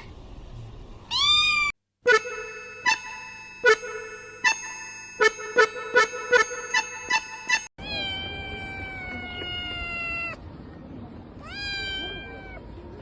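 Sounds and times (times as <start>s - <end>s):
cat meowing: 1.1s - 1.7s, 7.8s - 10.4s, 11.4s - 12.8s.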